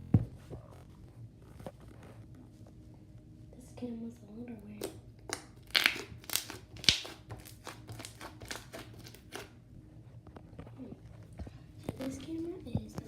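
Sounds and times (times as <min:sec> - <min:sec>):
slime squished with wet crackles: 0:04.7 - 0:09.5.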